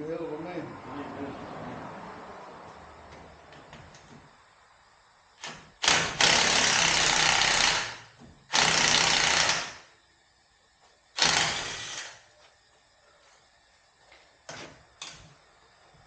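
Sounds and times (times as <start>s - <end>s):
cordless power tool running: 5.8s - 9.8s, 11.2s - 12.2s.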